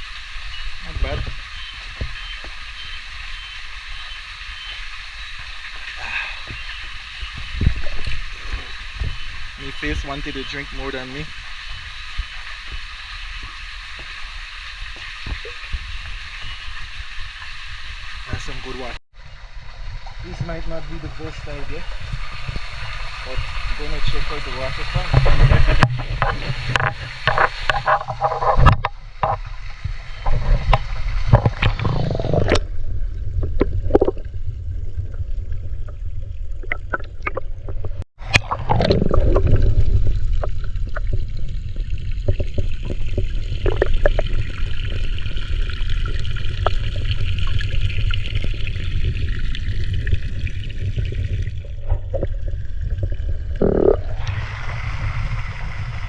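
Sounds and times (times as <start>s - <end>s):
knocks and clicks of movement: 25.1s - 32.7s
stream water rushing: 53.6s - 56.0s.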